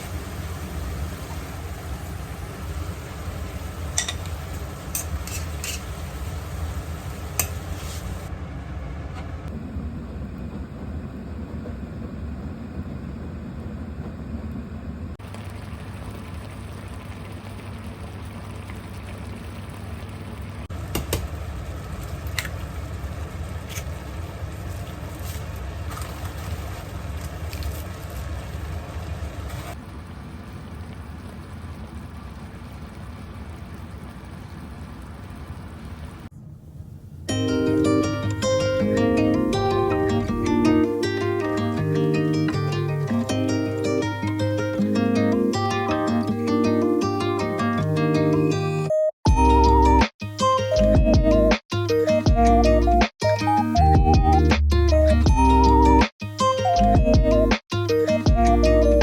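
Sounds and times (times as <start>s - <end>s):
faint sizzling: 0.0s - 9.0s, 15.2s - 48.5s
low hum: 0.0s - 43.5s
utensils clinking: 3.9s - 6.1s.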